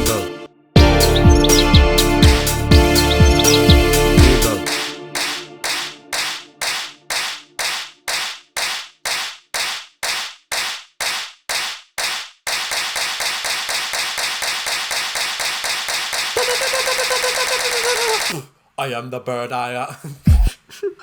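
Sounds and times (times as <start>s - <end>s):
held pitched tone: 0.0s - 7.1s
electronic clap hits: 0.8s - 18.3s.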